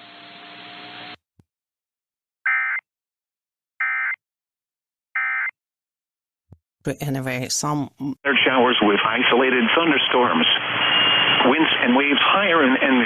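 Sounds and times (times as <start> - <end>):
radio hiss with faint hum: 8.3 - 13.0.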